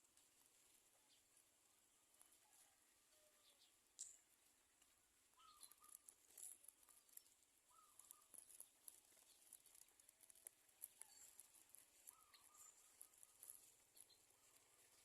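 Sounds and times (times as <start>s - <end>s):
faint bird chirps: 2.4s - 4.3s, 5.3s - 6.2s, 6.8s - 9.9s, 10.9s - 15.0s.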